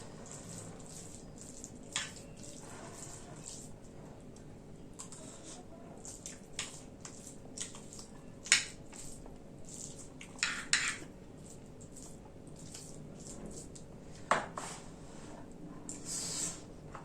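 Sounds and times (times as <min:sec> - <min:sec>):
wet chewing: 0:06.0 - 0:10.4, 0:11.4 - 0:13.8.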